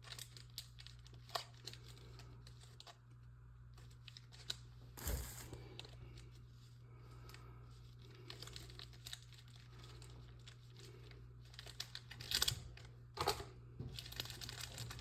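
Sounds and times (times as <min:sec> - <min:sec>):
card packs crinkling and rustling: 0:00.0 - 0:03.0, 0:07.3 - 0:13.0, 0:13.9 - 0:15.0
steady low hum: 0:01.5 - 0:12.0.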